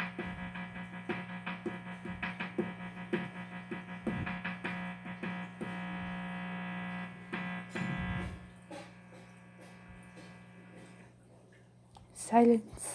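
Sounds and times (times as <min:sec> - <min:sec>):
electronic keyboard beat pattern: 0:00.0 - 0:06.4
amplifier buzz: 0:00.0 - 0:11.2.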